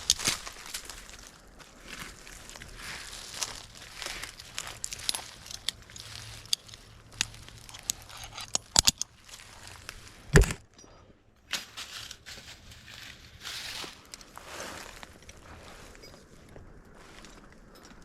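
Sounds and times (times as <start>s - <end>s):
metal climbing gear jingling: 0.0s - 0.9s, 2.6s - 11.0s, 15.2s - 16.4s, 17.2s - 18.0s
sharp clicks and knocks: 4.5s - 9.4s, 10.3s - 10.9s
heavy thump: 10.3s - 10.6s.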